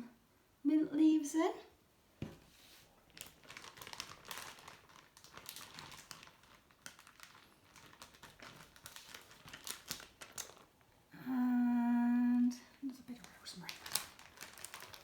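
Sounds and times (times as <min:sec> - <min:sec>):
plastic bag crinkling: 0:02.9 - 0:10.8, 0:13.0 - 0:15.0.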